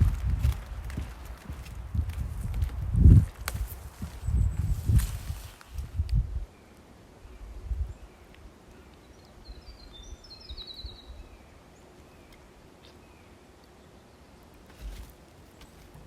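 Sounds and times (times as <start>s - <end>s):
songbird singing with trill: 4.0s - 5.0s, 6.2s - 14.3s.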